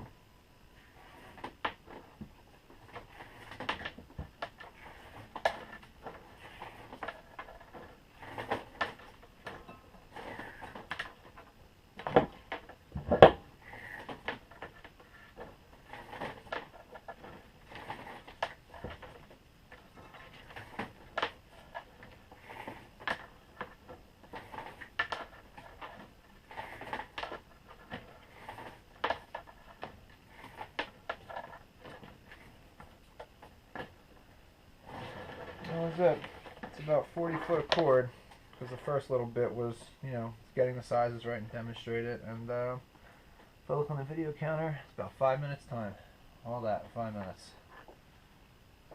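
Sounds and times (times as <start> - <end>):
wire stripper scraping cord: 2.9 - 9.2, 20.0 - 32.5.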